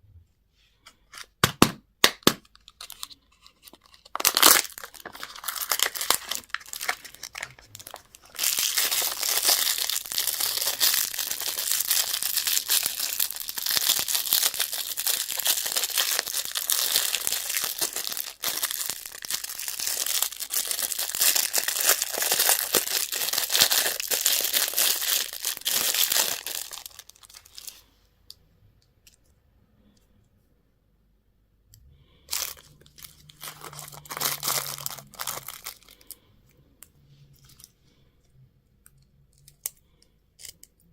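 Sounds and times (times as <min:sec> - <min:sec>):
candy wrapper crinkling: 0:02.0 - 0:27.8, 0:32.1 - 0:36.2.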